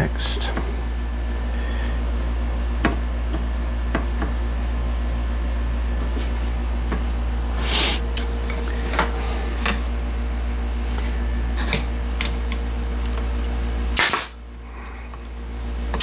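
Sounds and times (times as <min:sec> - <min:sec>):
machine low hum: 0:00.0 - 0:16.0.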